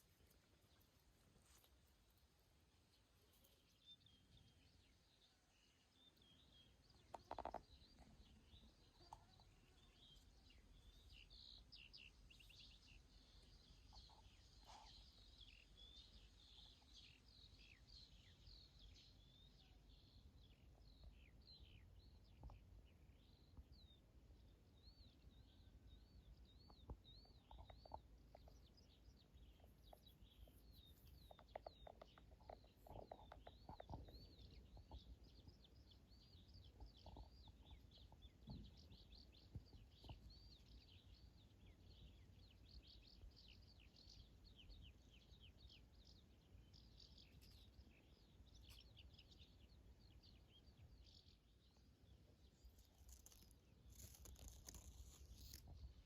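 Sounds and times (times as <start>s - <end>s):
small birds chirping and whistling: 24.8s - 56.0s.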